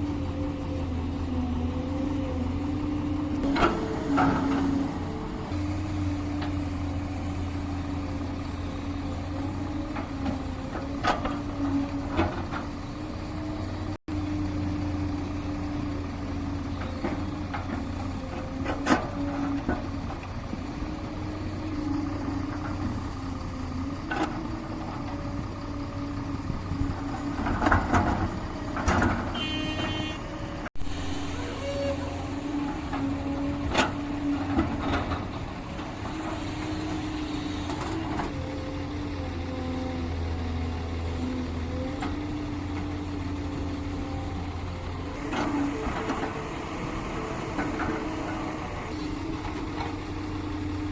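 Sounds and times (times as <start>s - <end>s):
excavator diesel engine running: 0.0s - 50.9s
machinery knocks and clanks: 3.4s - 7.0s, 16.0s - 25.6s, 26.4s - 29.9s, 32.2s - 38.5s.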